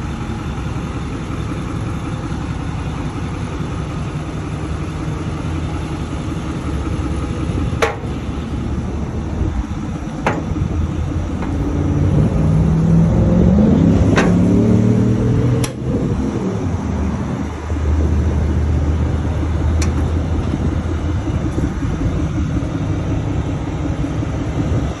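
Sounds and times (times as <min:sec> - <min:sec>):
truck engine idling and revving: 0:00.0 - 0:25.0.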